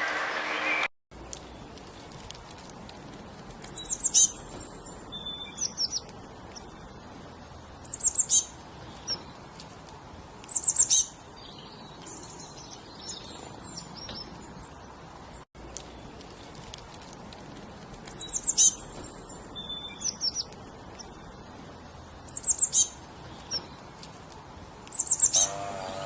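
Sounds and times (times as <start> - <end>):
small bird chirping: 3.6 - 9.7, 10.4 - 16.7, 18.0 - 24.1, 24.8 - 26.0.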